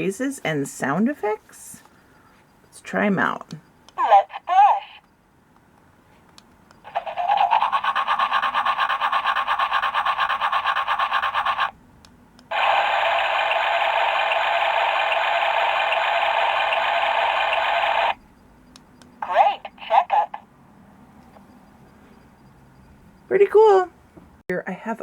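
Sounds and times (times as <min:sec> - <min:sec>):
electronic toy buzz: 0:06.9 - 0:11.8, 0:12.5 - 0:18.2.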